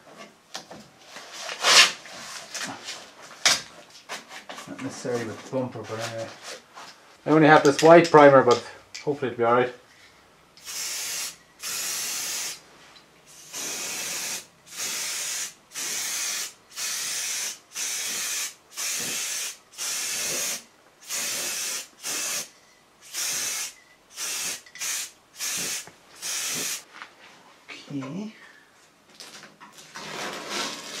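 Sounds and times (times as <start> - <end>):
aerosol spray can hissing: 10.6 - 12.6, 13.3 - 22.5, 23.1 - 26.8.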